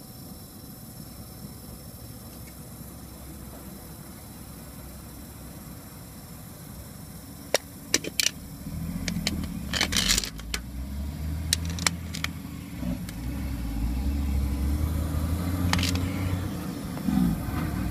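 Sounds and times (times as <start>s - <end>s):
car engine humming: 1.1s - 17.9s
sharp clicks and rattles: 7.5s - 10.8s, 11.4s - 12.4s, 13.0s - 13.3s, 15.7s - 16.2s.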